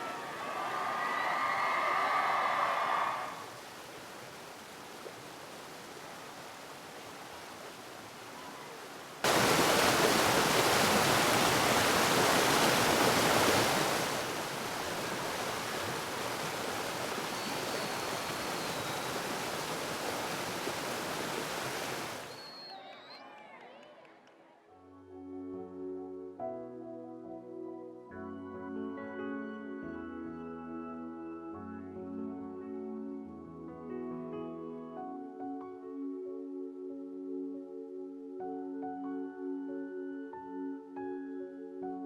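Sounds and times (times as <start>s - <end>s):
waterfall rushing: 0.0s - 22.4s.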